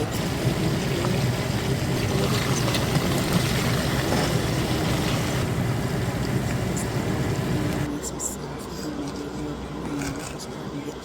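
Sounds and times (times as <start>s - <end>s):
chicken frying in oil: 0.0s - 6.6s.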